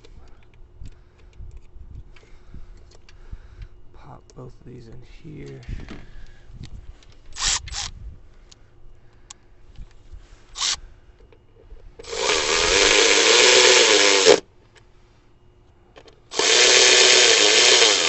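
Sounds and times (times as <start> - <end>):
cordless drill running: 10.6 - 10.8, 12.0 - 14.4, 16.3 - 18.0.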